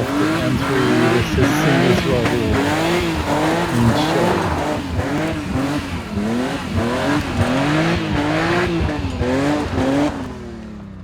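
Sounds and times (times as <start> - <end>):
tyres squealing: 0.0 - 7.5
car engines revving: 0.0 - 11.0.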